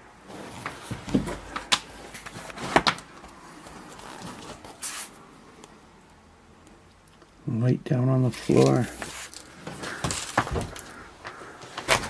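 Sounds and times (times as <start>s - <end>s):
rustling scrape: 0.2s - 2.8s, 3.4s - 5.2s, 8.4s - 11.0s.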